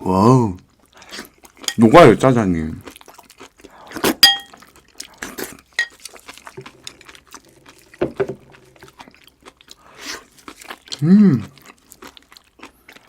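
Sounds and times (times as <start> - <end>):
utensil clinking and scraping dish: 1.7 - 1.9, 4.2 - 4.6, 5.8 - 6.0.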